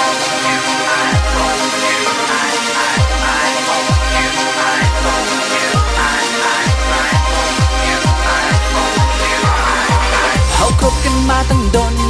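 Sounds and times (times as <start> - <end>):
sustained synth tones: 0.0 - 10.9
deep kick drum: 6.7 - 11.9.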